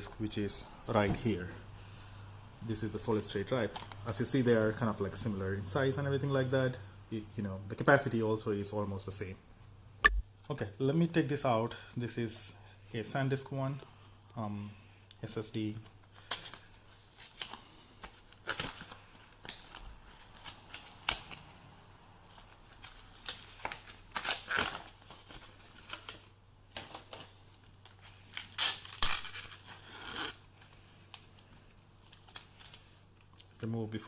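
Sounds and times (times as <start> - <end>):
packaging tearing and crinkling: 22.4 - 26.3, 27.8 - 30.4.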